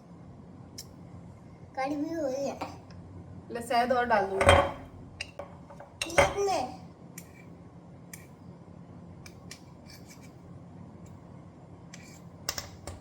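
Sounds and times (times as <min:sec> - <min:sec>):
spoon scraping a plate: 0:09.8 - 0:10.4, 0:11.9 - 0:12.3.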